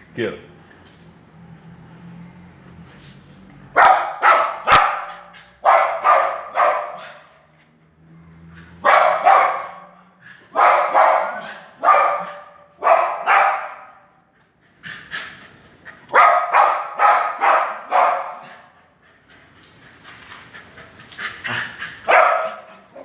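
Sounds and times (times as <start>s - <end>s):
dog barking: 3.7s - 7.5s, 8.6s - 14.2s, 16.1s - 18.8s, 21.5s - 23.0s.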